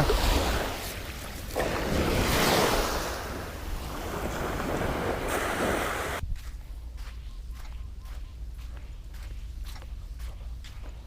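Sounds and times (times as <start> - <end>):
surf: 0.0 - 6.2.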